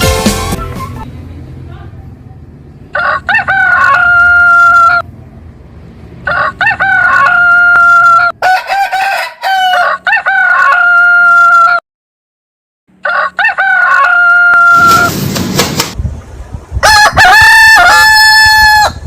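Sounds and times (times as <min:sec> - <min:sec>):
rooster crowing: 0:02.9 - 0:05.1, 0:06.2 - 0:11.8, 0:13.0 - 0:15.1, 0:16.8 - 0:19.0.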